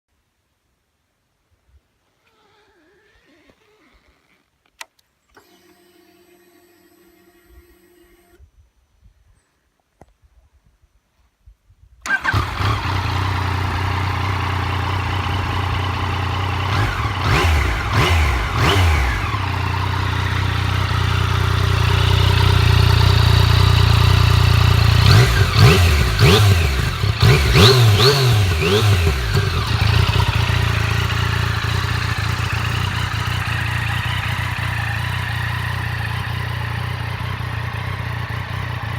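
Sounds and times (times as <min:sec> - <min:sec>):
motorcycle engine idling and revving: 0:12.1 - 0:38.9.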